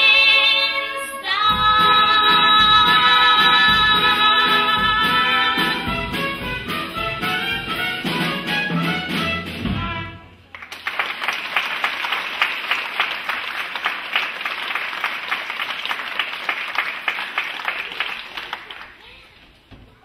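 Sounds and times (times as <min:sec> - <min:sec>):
stage musical number: 0:00.0 - 0:20.0
audience applause: 0:10.5 - 0:19.4.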